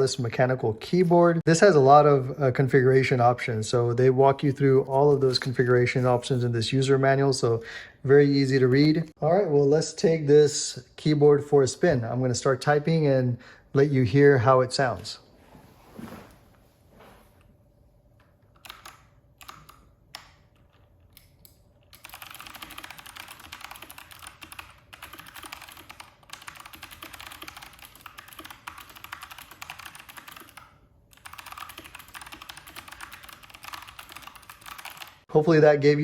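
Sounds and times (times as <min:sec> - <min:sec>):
clicky mechanical keyboard typing: 0:18.5 - 0:35.3.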